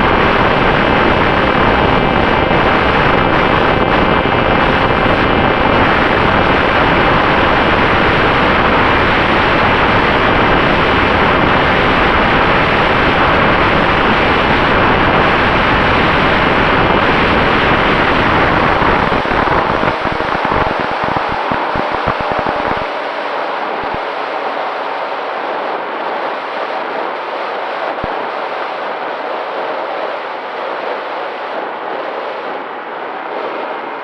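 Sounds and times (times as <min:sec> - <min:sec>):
electric motor and propeller whine: 0:00.0 - 0:24.6
wind noise on microphone: 0:00.0 - 0:34.0.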